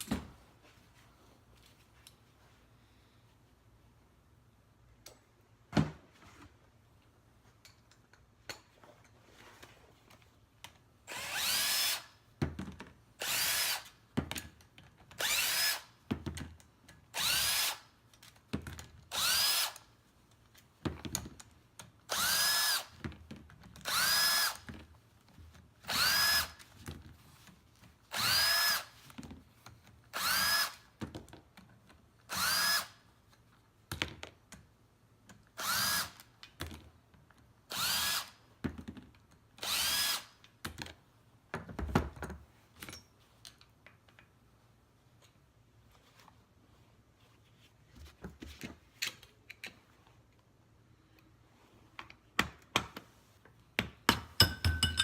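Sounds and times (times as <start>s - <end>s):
power drill spinning up: 11.1s - 12.1s, 13.2s - 13.9s, 15.2s - 15.9s, 17.2s - 17.8s, 19.1s - 19.8s, 22.1s - 22.9s, 23.8s - 24.6s, 25.9s - 26.6s, 28.1s - 29.0s, 30.1s - 30.8s, 32.3s - 33.0s, 35.6s - 36.2s, 37.7s - 38.3s, 39.6s - 40.4s.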